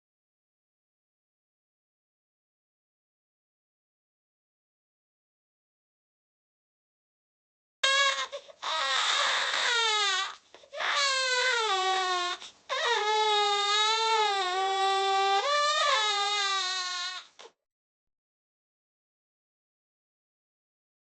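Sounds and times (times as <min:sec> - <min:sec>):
young child crying: 0:07.8 - 0:17.4.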